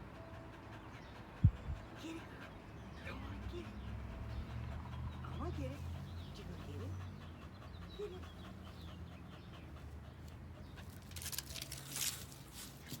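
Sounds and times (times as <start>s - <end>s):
scratchy rustles: 10.9s - 13.0s.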